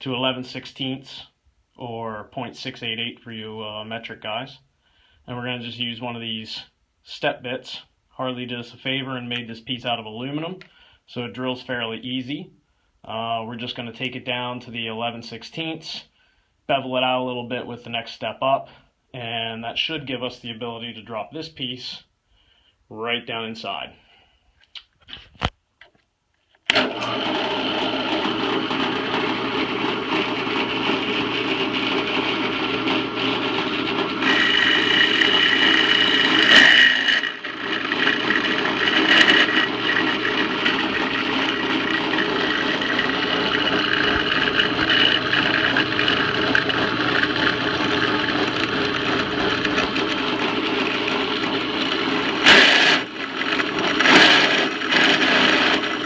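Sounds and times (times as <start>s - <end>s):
electric drill cutting metal: 30.2s - 56.0s.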